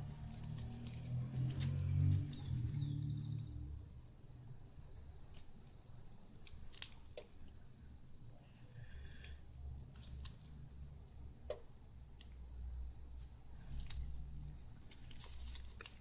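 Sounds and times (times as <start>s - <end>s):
low handling rumble: 0.0s - 4.1s.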